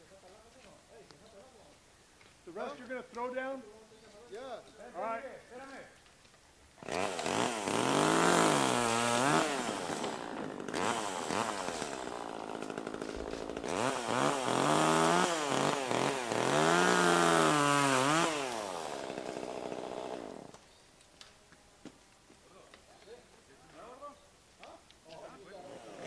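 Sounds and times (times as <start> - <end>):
chainsaw revving: 6.8 - 20.6, 25.2 - 26.0.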